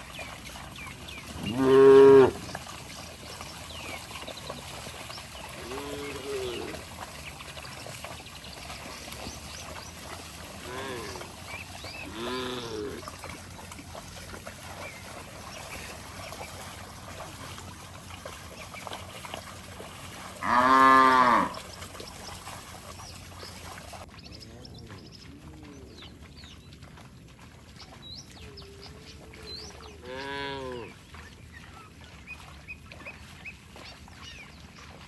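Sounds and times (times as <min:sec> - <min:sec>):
cattle mooing: 0:01.3 - 0:02.5, 0:05.6 - 0:06.9, 0:10.6 - 0:13.1, 0:20.4 - 0:21.6, 0:30.0 - 0:30.9.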